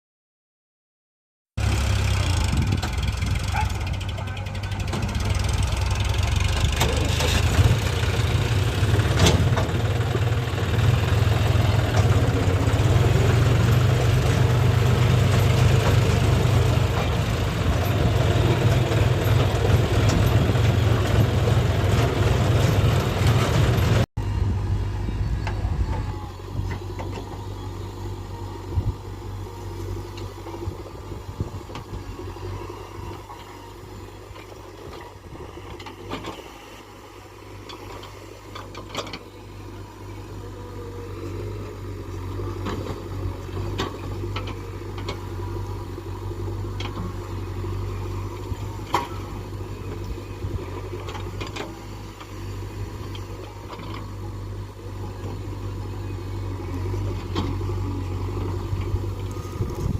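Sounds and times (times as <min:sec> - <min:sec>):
heavy diesel engine running: 0:01.6 - 0:59.9.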